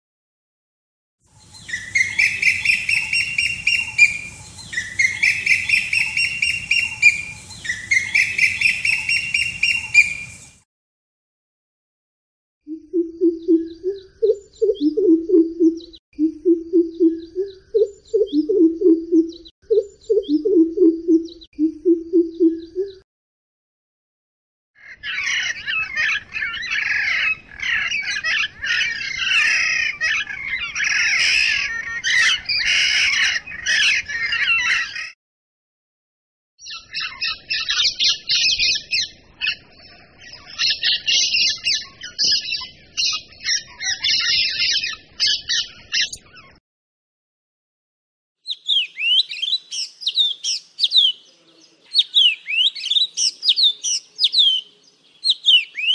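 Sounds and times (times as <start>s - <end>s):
low-pitched bird call: 1.3s - 10.6s, 12.7s - 23.0s
rapid high bird chirping: 1.3s - 10.6s, 13.0s - 16.0s, 16.7s - 21.5s, 48.4s - 51.2s, 51.9s - 55.9s
dense high bird chattering: 1.4s - 10.4s, 12.9s - 23.0s.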